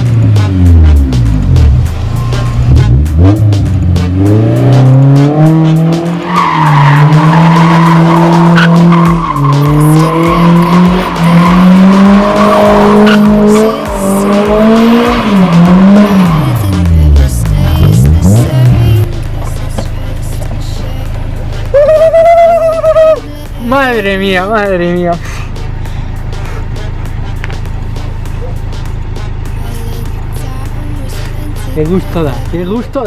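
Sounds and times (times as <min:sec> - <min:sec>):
car engine revving hard: 0:00.0 - 0:19.1
tyres squealing: 0:06.0 - 0:16.6.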